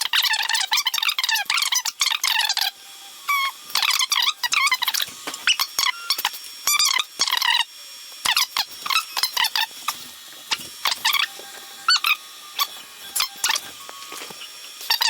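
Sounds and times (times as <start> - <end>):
stepper motors chirping and whining: 0.0 - 15.0.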